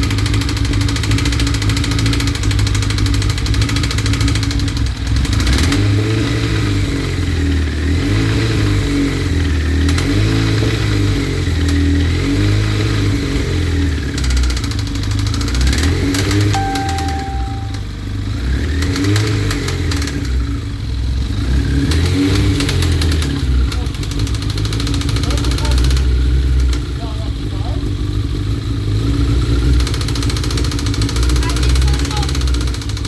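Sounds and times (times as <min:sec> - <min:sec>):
motorcycle engine idling: 0:23.4 - 0:33.0.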